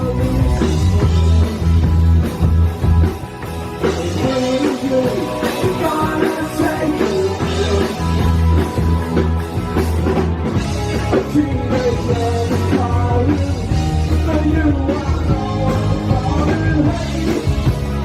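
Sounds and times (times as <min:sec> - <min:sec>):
lead vocal singing: 0:00.0 - 0:01.9, 0:03.8 - 0:08.5, 0:11.1 - 0:17.8
rock band playing live: 0:00.0 - 0:18.0.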